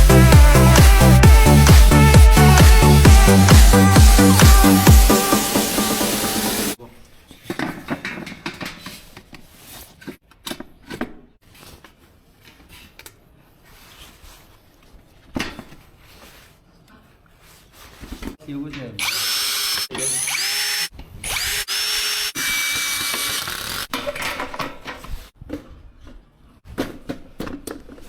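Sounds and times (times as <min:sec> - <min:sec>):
electronic dance music: 0:00.0 - 0:06.8.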